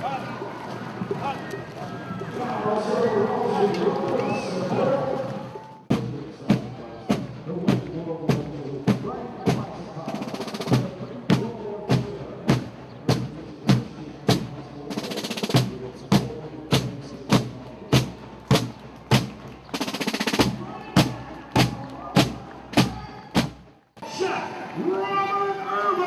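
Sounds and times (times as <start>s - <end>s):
marching drums: 5.8s - 24.1s
snare drum roll: 5.9s - 23.8s.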